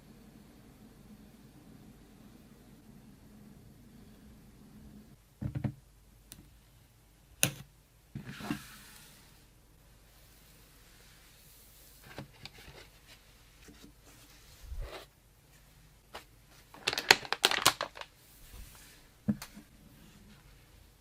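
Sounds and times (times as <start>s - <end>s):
packaging crinkling and rustling: 16.6s - 18.2s.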